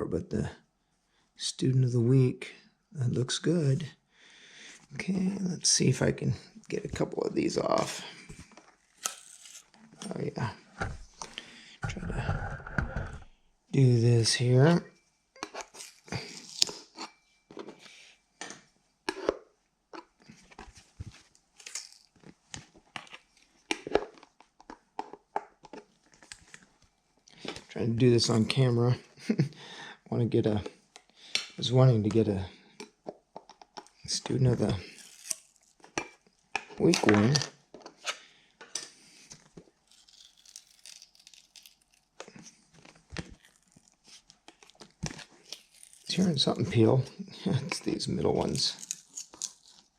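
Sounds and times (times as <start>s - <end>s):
plastic pieces crackling: 9.0s - 9.7s, 34.8s - 35.9s, 39.8s - 46.5s, 48.4s - 49.9s
plastic pieces clicking and crackling: 39.8s - 42.4s, 48.5s - 49.8s.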